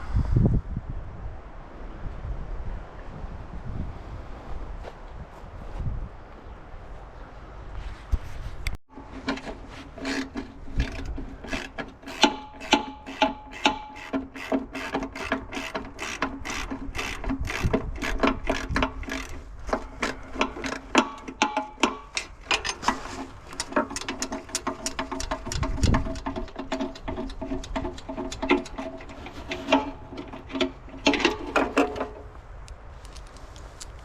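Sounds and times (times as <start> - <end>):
ratchet wrench clicking: 10.0 - 22.8.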